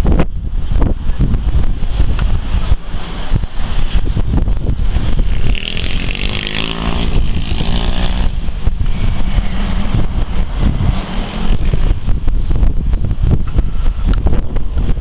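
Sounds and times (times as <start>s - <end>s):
wind buffeting microphone: 0.0s - 15.0s
engine drone: 0.1s - 15.0s.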